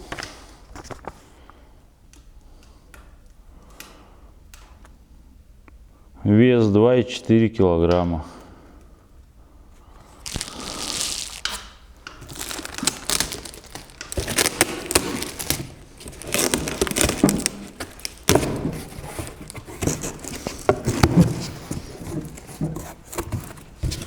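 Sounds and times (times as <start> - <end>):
packaging tearing and crinkling: 10.1 - 24.0.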